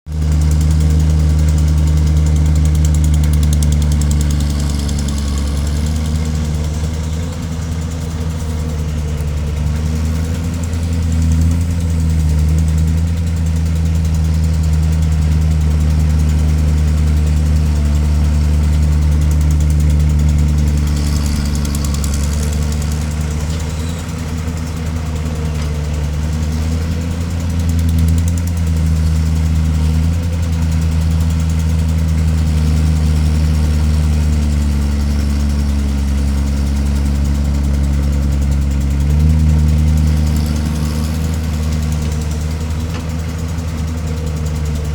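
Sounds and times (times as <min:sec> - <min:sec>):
excavator diesel engine running: 0:00.1 - 0:44.9.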